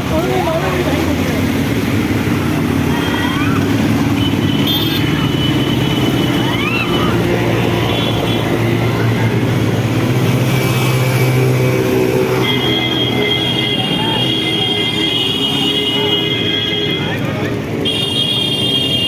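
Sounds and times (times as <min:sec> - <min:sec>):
faint voices: 0:00.0 - 0:10.5.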